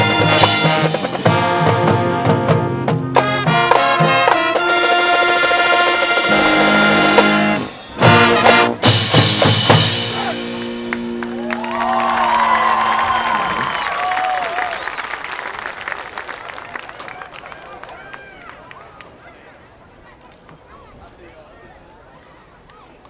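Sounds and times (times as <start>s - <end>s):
marching band brass chords: 0.0s - 12.6s.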